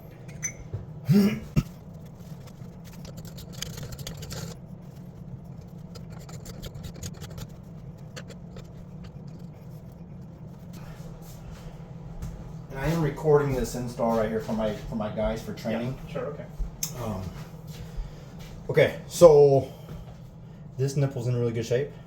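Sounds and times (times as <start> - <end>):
low hum: 0.0 - 22.0
cough-like vocal sound: 1.0 - 1.8
pipe fittings clicking and scraping: 1.9 - 10.8.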